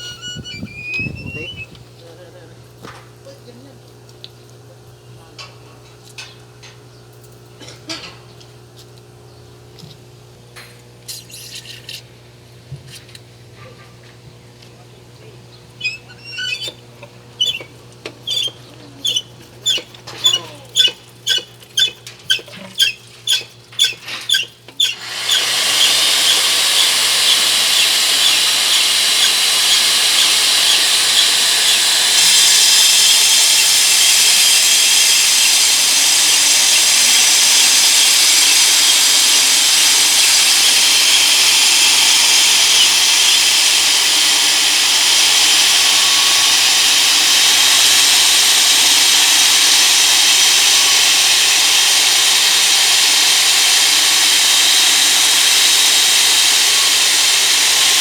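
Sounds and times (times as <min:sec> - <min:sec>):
core drill high-pitched hiss: 0:00.0 - 0:01.8, 0:15.8 - 0:16.8, 0:17.4 - 0:17.7, 0:18.3 - 0:58.0.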